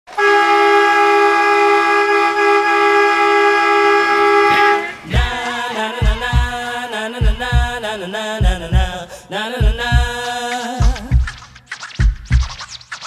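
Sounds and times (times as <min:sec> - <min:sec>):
hockey goal horn: 0:00.1 - 0:05.1
song with thumping beat: 0:05.0 - 0:13.0.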